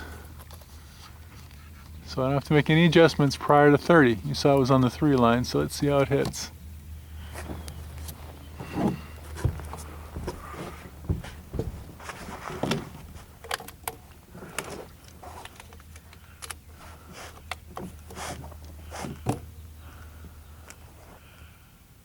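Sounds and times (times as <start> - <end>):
steady low hum: 0.0 - 22.0
handling clicks and knocks: 7.3 - 19.6.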